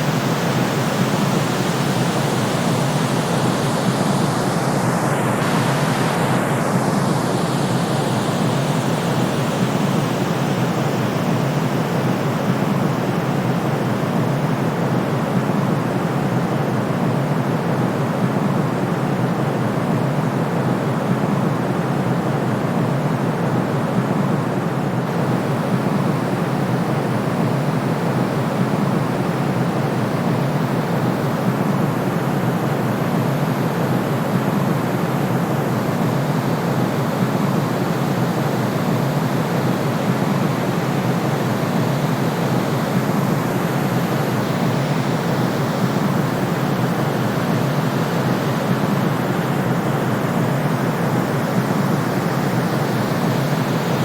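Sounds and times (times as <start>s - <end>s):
steady white noise hiss: 0.0s - 54.0s.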